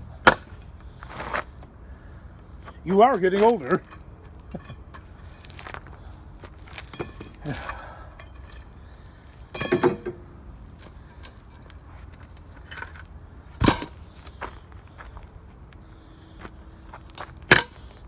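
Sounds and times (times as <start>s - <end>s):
metal clatter: 0.2s - 0.8s, 3.6s - 5.9s, 6.5s - 14.4s, 17.1s - 18.0s
metal parts clinking: 0.2s - 0.9s, 2.7s - 5.9s, 6.6s - 14.3s, 17.1s - 18.0s.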